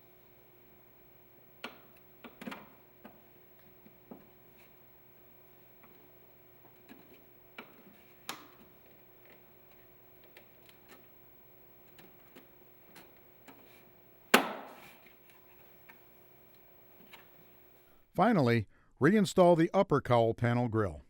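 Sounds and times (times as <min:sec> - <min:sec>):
retainer clips clicking into place: 0:01.6 - 0:03.2.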